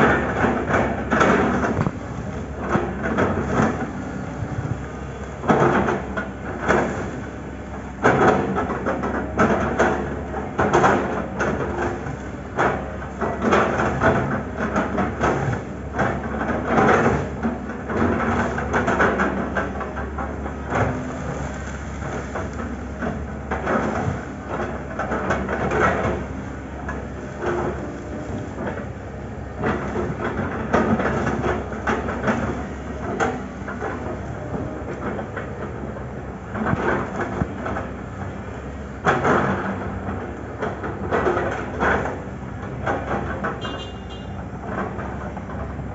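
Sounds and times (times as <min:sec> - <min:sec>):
wood cracking and crunching: 0:00.0 - 0:07.2, 0:13.3 - 0:35.4
excavator engine running: 0:00.0 - 0:45.9.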